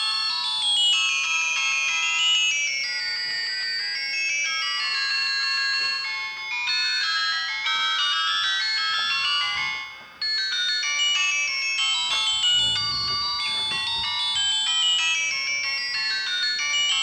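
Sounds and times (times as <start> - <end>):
synthesised ringtone melody: 11.3 - 17.0.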